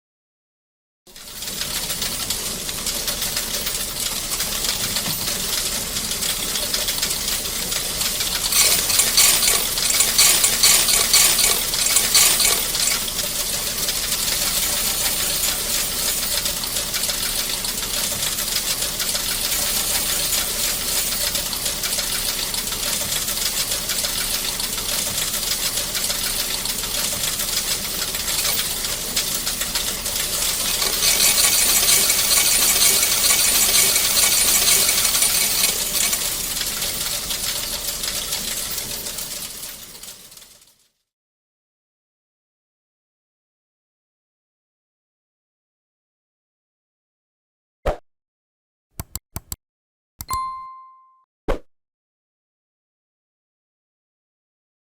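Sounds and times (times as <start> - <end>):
coins rattling through counting machine: 1.1 - 40.9.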